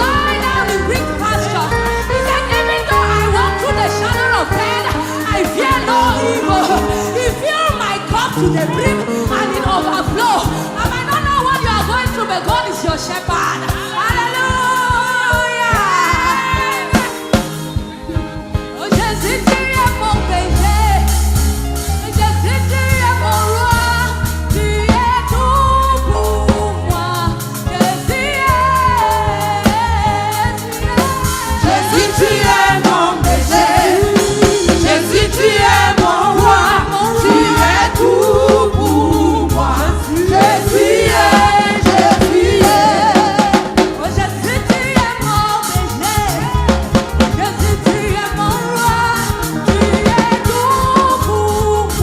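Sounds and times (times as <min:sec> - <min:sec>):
drum kit: 0:00.0 - 0:52.0
heavy bass line: 0:19.2 - 0:52.0
voices singing: 0:28.2 - 0:45.3.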